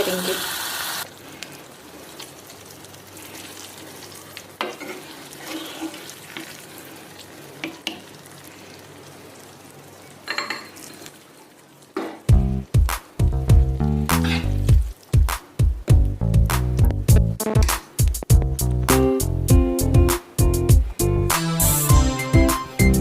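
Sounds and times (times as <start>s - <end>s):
faint steady hiss: 0.0s - 19.5s
metal spoon scraping a pan: 4.6s - 6.5s, 14.1s - 14.7s
loud music: 16.5s - 23.0s.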